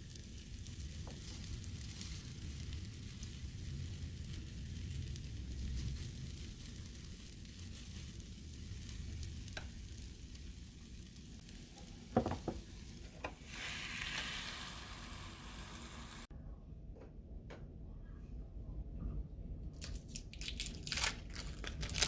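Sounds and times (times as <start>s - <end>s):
food sizzling in a frying pan: 0.0s - 16.3s.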